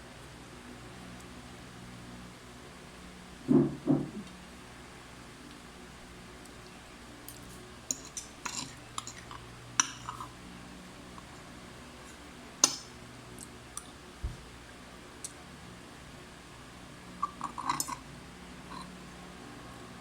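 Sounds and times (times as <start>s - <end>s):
cutlery clinking on a plate: 7.3s - 10.3s.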